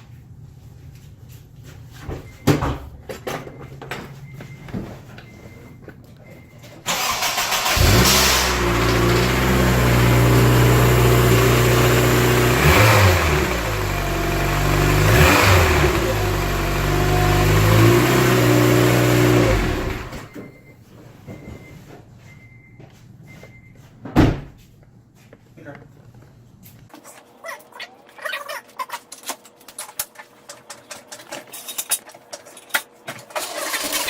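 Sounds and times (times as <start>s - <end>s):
car engine cranking and running: 6.9s - 20.4s, 33.2s - 34.0s.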